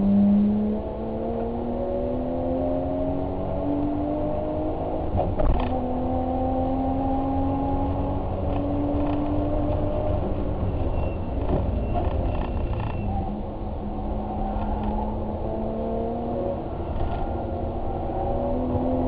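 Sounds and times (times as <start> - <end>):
car driving drone: 0.0 - 19.0
knocks and creaks: 5.2 - 5.8, 8.4 - 9.9, 10.6 - 13.2.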